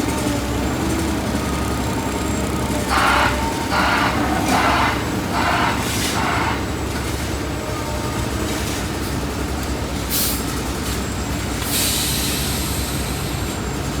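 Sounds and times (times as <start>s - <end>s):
diesel machinery rumbling: 0.0s - 14.0s.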